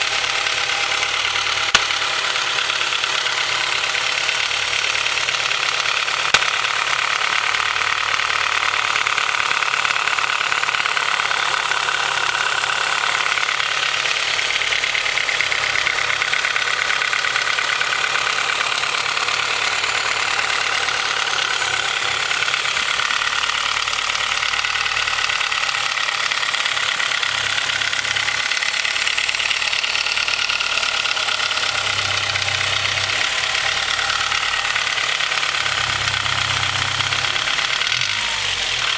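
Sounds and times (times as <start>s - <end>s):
engine idling with rapid knocking: 0.0s - 38.9s
sharp click: 1.6s - 2.4s, 6.1s - 7.0s.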